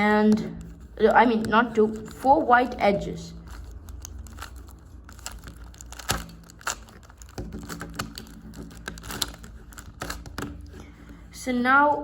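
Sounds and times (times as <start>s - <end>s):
puzzle cube clicking as turned: 3.5s - 10.6s.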